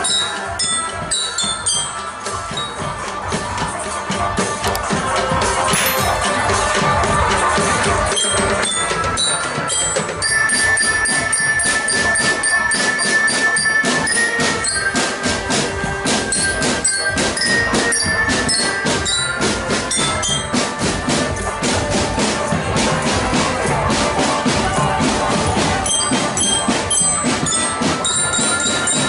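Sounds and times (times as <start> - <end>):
high bell-like notes: 5.7 - 6.9.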